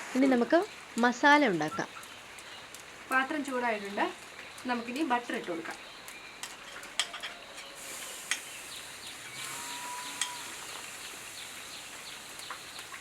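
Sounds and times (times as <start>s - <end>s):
birds chirping: 0.3s - 13.0s
butter sizzling in hot pan: 7.5s - 13.0s.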